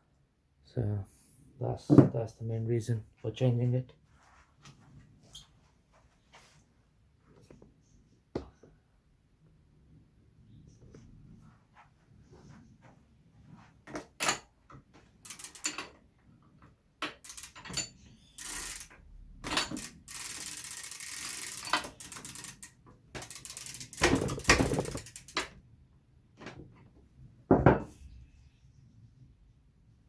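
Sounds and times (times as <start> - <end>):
metal tool and bike-part clanks: 14.2 - 14.5, 15.3 - 16.0, 17.1 - 18.8, 19.4 - 19.9, 23.2 - 25.5
rapid ratchet ticking: 15.2 - 15.8, 17.1 - 25.5.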